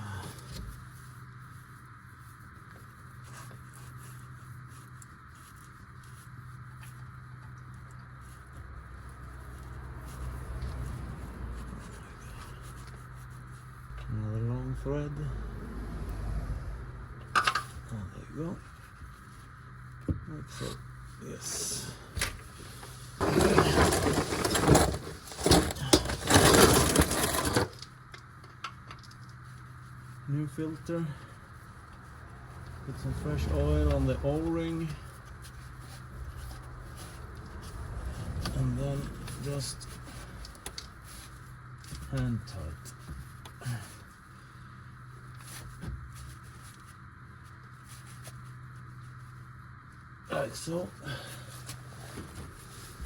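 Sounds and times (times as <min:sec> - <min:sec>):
steady low hum: 0:00.0 - 0:53.0
oil filter clicking and scraping: 0:22.7 - 0:29.4.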